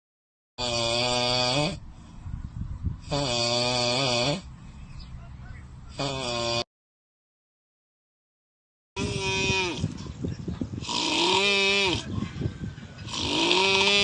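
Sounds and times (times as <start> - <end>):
comedic snoring: 0.6 - 1.8, 3.0 - 4.5, 5.9 - 6.7, 9.0 - 10.0, 10.8 - 12.2, 13.0 - 14.0.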